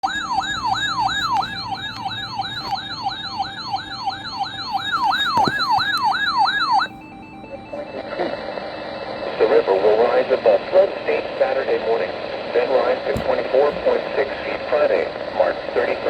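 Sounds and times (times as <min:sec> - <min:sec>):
electronic siren sweeping: 0:00.0 - 0:09.7.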